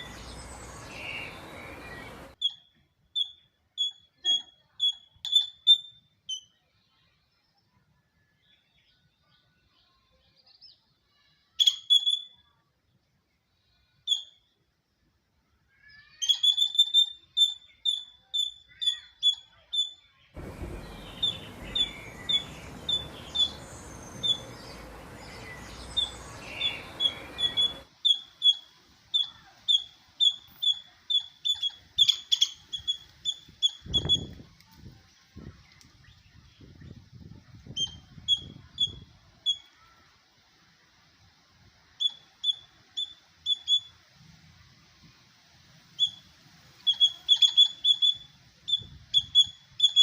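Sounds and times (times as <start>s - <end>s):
squirrel chirping: 16.2s - 34.3s, 42.0s - 43.9s, 46.8s - 50.0s
wind noise on microphone: 20.4s - 27.8s, 33.3s - 39.4s, 48.7s - 49.7s.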